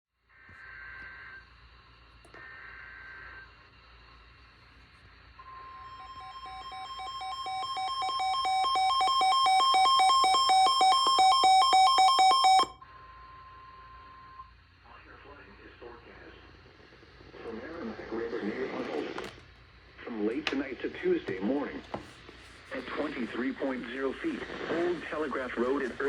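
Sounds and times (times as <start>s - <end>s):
steady warning tone: 5.2s - 18.6s.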